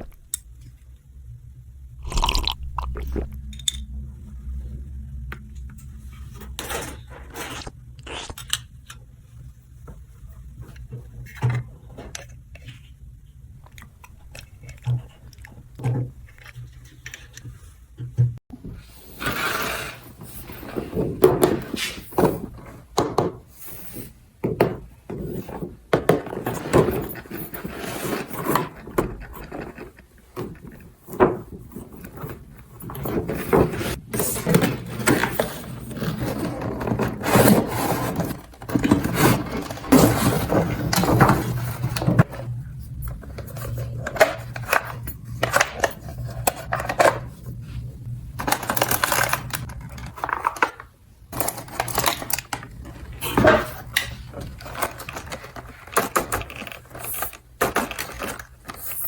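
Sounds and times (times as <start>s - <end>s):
low steady hum: 0.0s - 18.3s.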